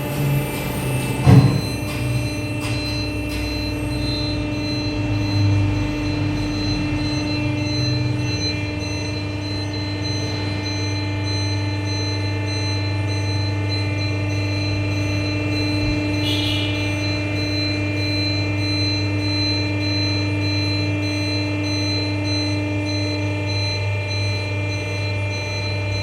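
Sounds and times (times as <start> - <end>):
machinery low hum: 0.0 - 26.0
machinery whining tones: 0.0 - 26.0.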